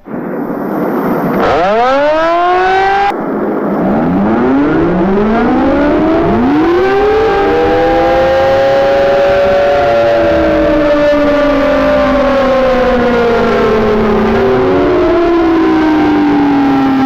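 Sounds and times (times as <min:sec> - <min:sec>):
warning sirens wailing: 0:00.6 - 0:17.0.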